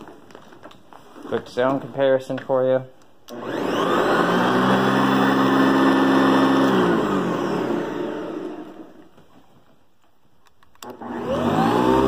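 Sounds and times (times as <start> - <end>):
vacuum motor winding down: 3.3 - 9.1, 10.8 - 12.0
vacuum cleaner running: 3.3 - 9.2, 10.8 - 12.0.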